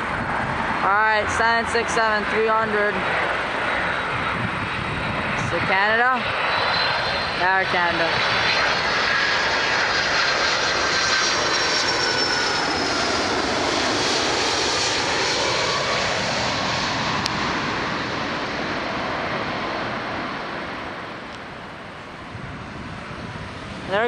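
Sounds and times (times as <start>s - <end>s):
jet airliner passing overhead: 0.0s - 24.0s.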